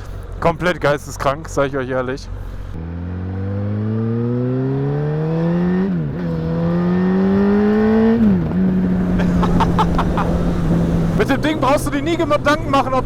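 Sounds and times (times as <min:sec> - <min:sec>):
motorcycle engine accelerating: 0:02.7 - 0:13.0.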